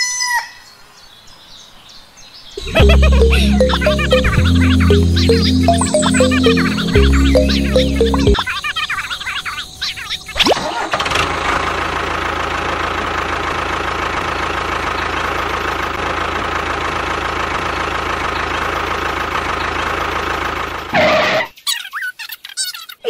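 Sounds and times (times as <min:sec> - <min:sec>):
tractor engine idling: 0:10.9 - 0:20.9.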